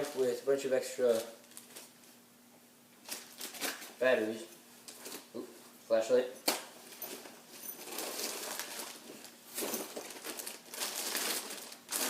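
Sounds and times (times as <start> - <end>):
gear rustling in backpack pouch: 6.9 - 12.0.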